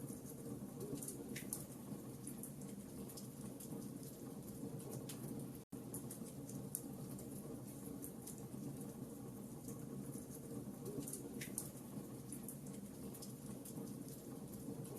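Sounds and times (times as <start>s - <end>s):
wood fire crackling: 0.0s - 14.9s.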